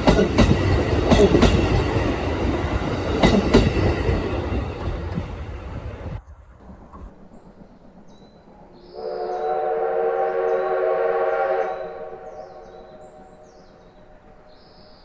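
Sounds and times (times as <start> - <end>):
steam locomotive whistle blast: 8.9 - 13.7.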